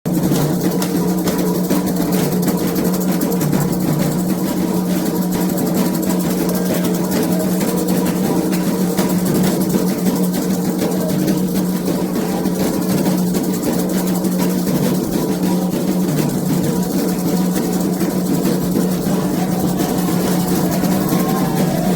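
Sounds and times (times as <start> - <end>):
hand drums playing fast rhythm: 0.1 - 21.9.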